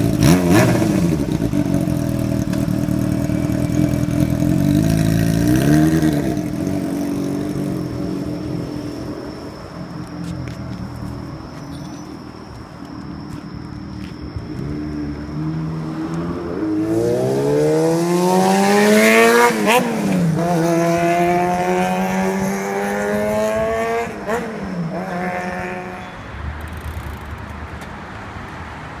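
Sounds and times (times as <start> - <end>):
motorcycle engine accelerating: 0.0 - 10.1, 14.4 - 26.0.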